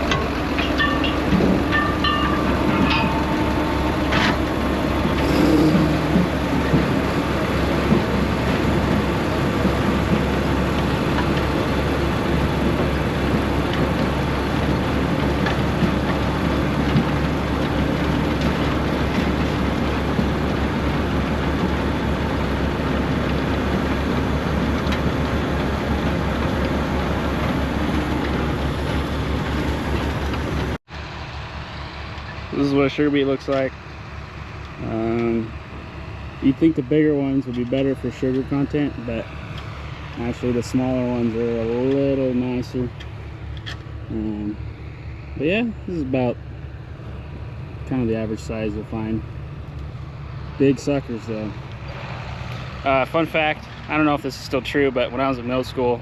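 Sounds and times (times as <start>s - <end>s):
sharp metal clanks: 0.0s - 6.9s
diesel machinery running: 0.0s - 56.0s.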